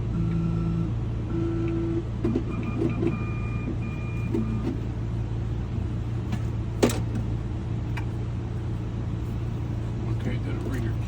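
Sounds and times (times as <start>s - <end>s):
short electronic beeps: 0.1s - 4.8s.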